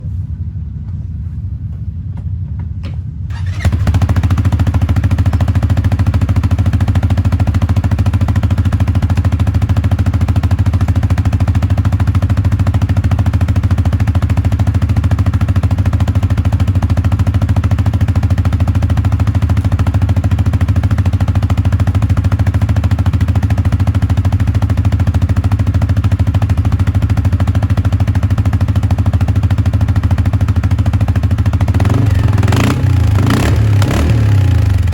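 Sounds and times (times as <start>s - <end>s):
atv engine running: 3.3s - 34.9s.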